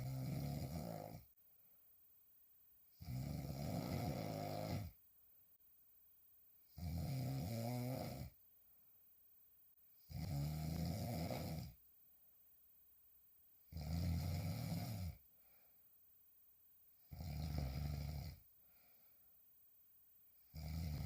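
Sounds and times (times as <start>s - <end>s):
woman snoring: 0.0s - 1.3s, 3.0s - 5.0s, 6.7s - 8.4s, 10.1s - 11.8s, 13.7s - 15.2s, 17.1s - 18.5s, 20.5s - 21.0s
quiet breathing: 0.0s - 1.4s, 13.9s - 16.2s, 17.1s - 21.0s.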